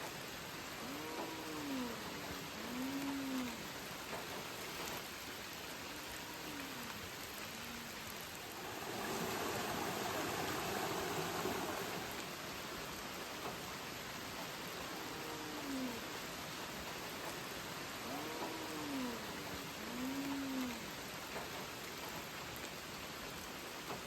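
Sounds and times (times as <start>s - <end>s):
steady rain falling: 0.0s - 24.0s
low animal calls: 0.8s - 3.7s, 15.0s - 16.2s, 18.0s - 20.9s.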